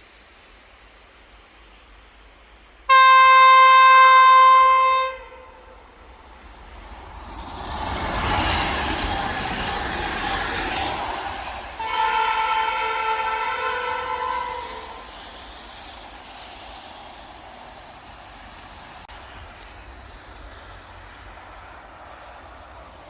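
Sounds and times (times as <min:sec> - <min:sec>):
train air horn blast: 0:02.9 - 0:06.0, 0:11.8 - 0:15.2
two-note train horn: 0:02.9 - 0:06.0, 0:11.8 - 0:15.2
train wheels rolling on rails: 0:04.0 - 0:23.0.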